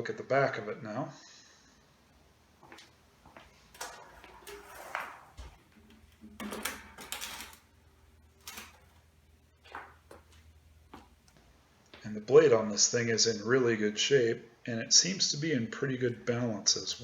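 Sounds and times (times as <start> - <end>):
fan handling knocks and scrapes: 3.8 - 7.7.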